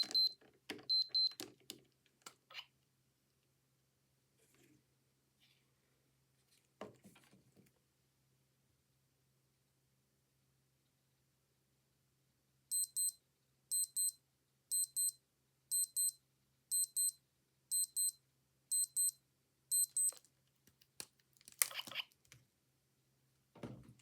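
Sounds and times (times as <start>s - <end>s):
digital watch alarm beeping: 0.0s - 1.3s, 12.7s - 20.2s.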